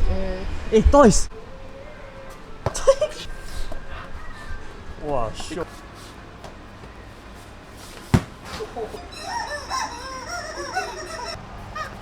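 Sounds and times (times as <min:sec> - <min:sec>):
chickens squawking and clucking: 0:08.5 - 0:12.0.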